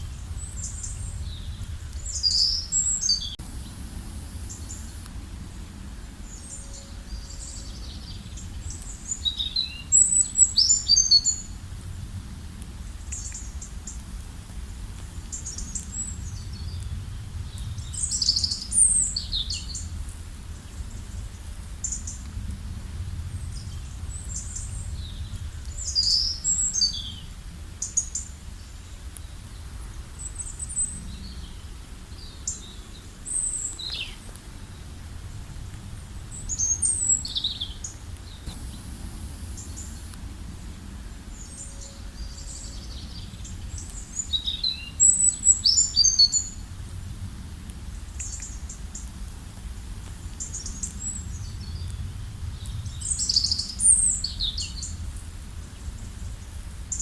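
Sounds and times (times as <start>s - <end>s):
small birds chirping: 0.0s - 11.6s, 23.5s - 34.9s, 36.3s - 46.6s
steady low rumble: 0.0s - 45.8s, 46.4s - 56.9s.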